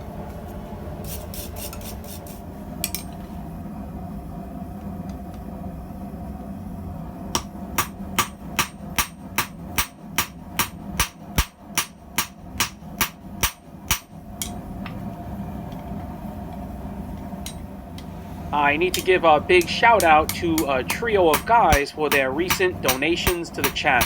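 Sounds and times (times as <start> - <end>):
hammer striking steel on anvil: 7.3 - 14.6, 18.9 - 24.0.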